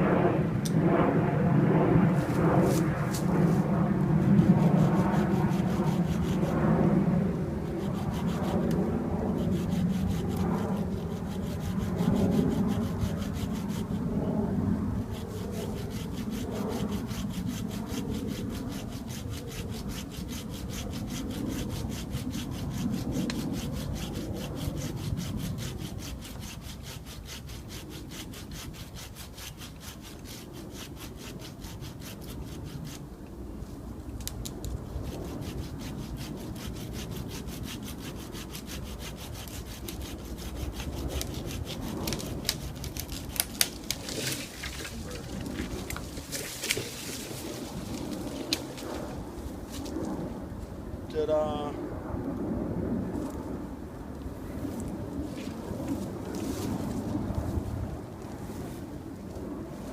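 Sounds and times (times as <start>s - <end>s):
cord sawing through wood: 4.2s - 6.6s, 7.5s - 14.1s, 15.0s - 33.0s, 34.8s - 49.0s.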